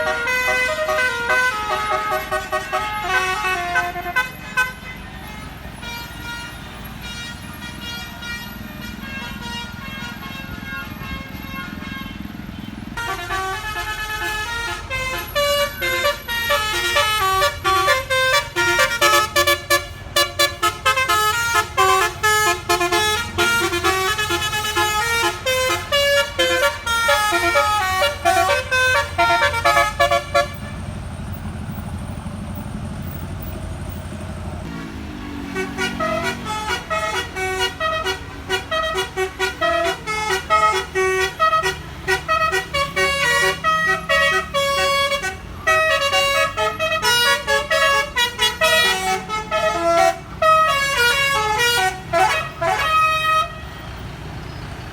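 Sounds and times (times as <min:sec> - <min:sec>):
musical air horn tune: 0:00.0 - 0:04.7, 0:13.0 - 0:30.8, 0:35.5 - 0:53.6
vehicle engine rumbling: 0:00.0 - 0:54.9.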